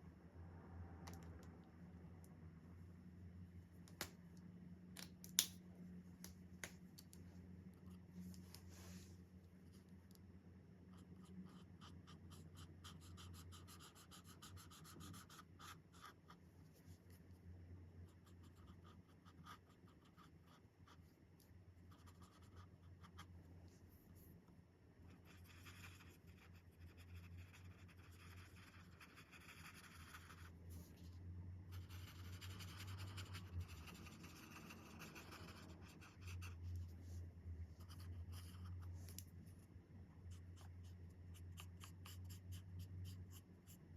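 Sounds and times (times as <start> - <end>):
marker scratching on paper: 25.2 - 30.5, 31.7 - 37.2, 37.8 - 39.0.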